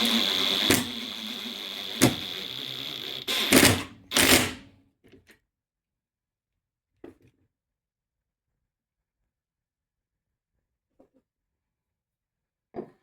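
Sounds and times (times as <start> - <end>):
cordless drill whining: 0.0 - 4.7
sharp clicks: 0.0 - 4.7.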